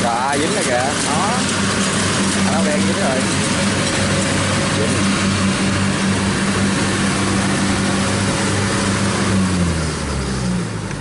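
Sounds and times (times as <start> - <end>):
machine rushing noise: 0.0 - 10.8
combine harvester diesel engine: 0.0 - 11.0.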